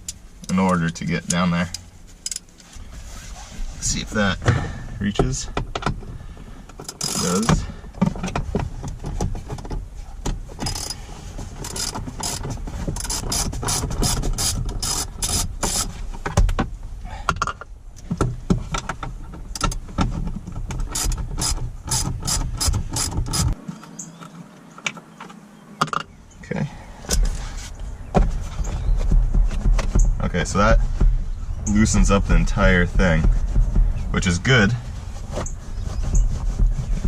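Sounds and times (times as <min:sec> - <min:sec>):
socket wrench ratchet clicking: 0:10.6 - 0:11.0.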